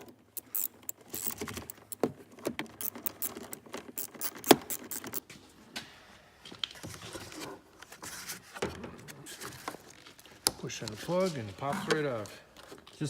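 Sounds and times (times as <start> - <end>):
tools and plastic parts clicking: 0.0 - 5.3.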